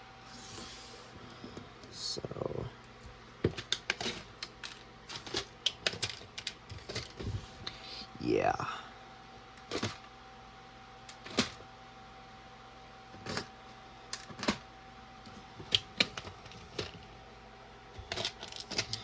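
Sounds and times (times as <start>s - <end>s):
faint steady hum: 0.0s - 19.0s
plastic pieces clicking: 3.5s - 7.2s, 18.0s - 19.0s.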